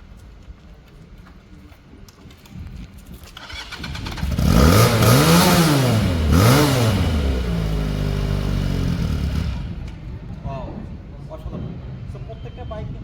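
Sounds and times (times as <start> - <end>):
motorcycle engine revving and idling: 3.4 - 10.3.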